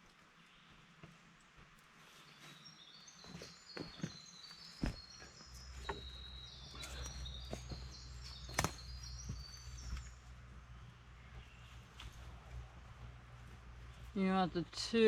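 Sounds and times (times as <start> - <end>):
birds singing: 2.0 - 12.4
wooden stakes knocking: 8.5 - 9.4
low steady rumble: 9.0 - 15.0.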